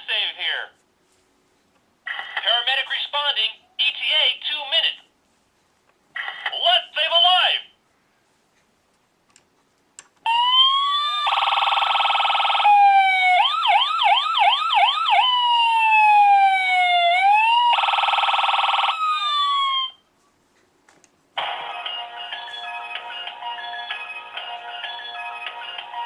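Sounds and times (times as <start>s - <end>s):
toy electronic siren: 10.3s - 20.0s.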